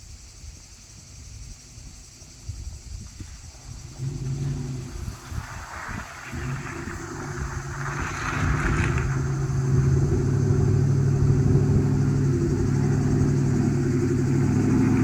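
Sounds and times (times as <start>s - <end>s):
vehicle engine running: 3.3s - 15.0s.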